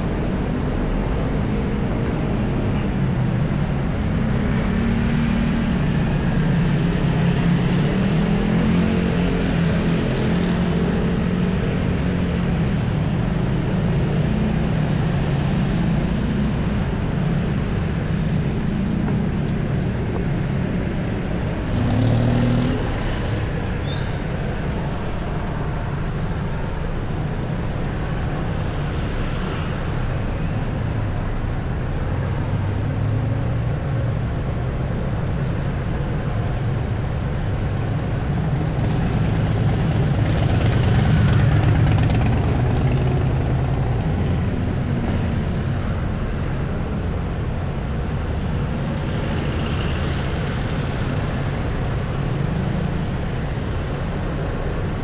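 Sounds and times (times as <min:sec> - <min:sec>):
traffic engine rumble: 0:00.0 - 0:55.0.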